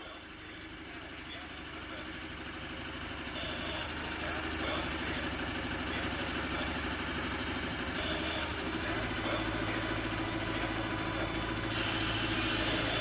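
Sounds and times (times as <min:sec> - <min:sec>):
large vehicle engine at low revs: 0:00.0 - 0:13.0
hiss: 0:11.7 - 0:13.0.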